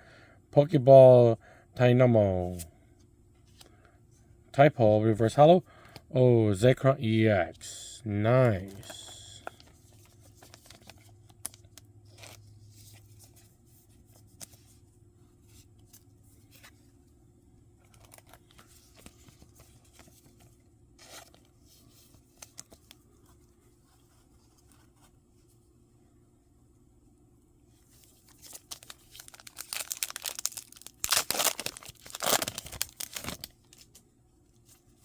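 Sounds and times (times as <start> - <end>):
foil wrapper tearing and crinkling: 28.1 - 33.9.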